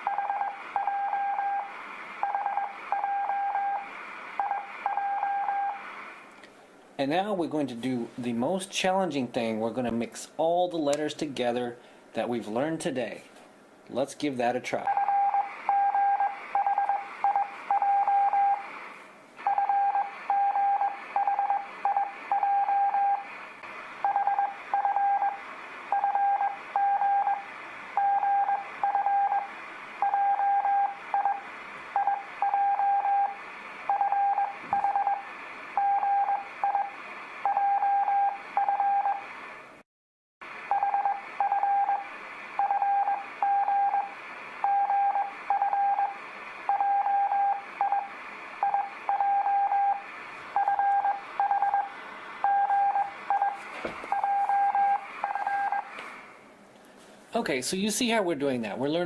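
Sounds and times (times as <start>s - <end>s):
morse code beeps: 14.9s - 18.6s, 19.4s - 23.2s, 24.0s - 27.4s, 28.0s - 31.4s, 32.0s - 35.2s, 35.8s - 36.9s, 37.5s - 39.2s, 40.7s - 42.0s, 42.6s - 50.0s, 50.6s - 55.9s.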